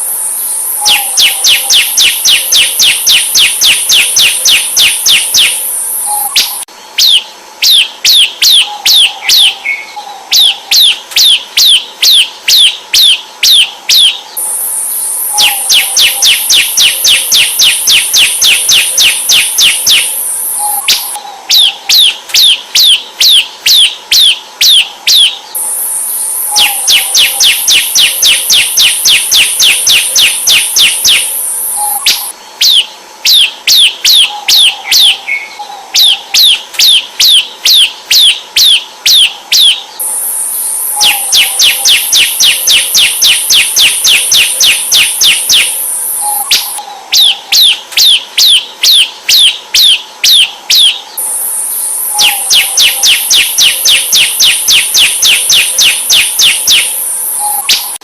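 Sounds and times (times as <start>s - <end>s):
high hissing buzz: 0.0s - 6.7s, 14.2s - 21.2s, 25.4s - 32.5s, 39.9s - 46.8s, 51.1s - 58.0s
bird singing sharp chip notes: 0.0s - 49.9s, 50.7s - 58.0s.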